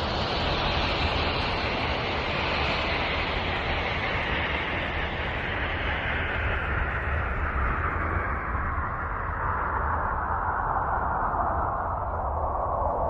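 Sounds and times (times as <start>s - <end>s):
constant low rumble: 0.0s - 13.0s.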